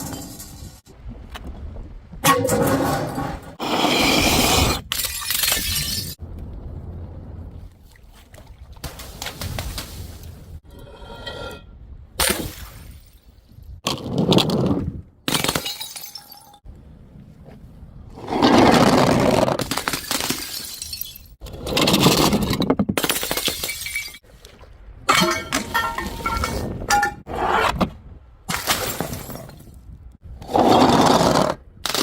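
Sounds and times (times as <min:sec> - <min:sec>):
glass bottles smashing: 0:05.0 - 0:06.2, 0:15.3 - 0:16.6, 0:19.9 - 0:21.4, 0:23.1 - 0:24.2, 0:25.1 - 0:27.2.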